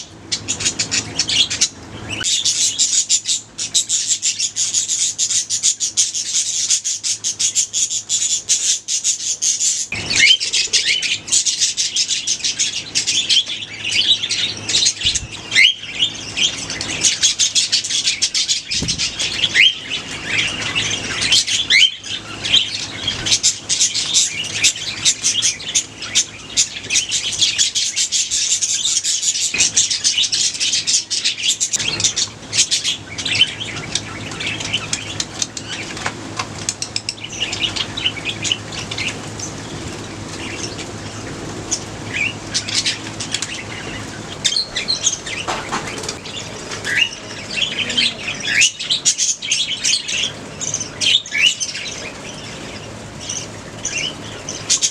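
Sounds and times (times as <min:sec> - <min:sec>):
sharp whistled bird calls: 0:00.0 - 0:35.8
budgerigars chattering and chirping: 0:00.0 - 0:54.9.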